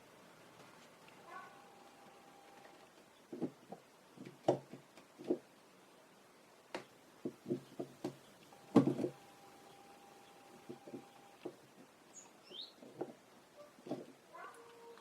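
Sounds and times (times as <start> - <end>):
knock: 8.8 - 9.1.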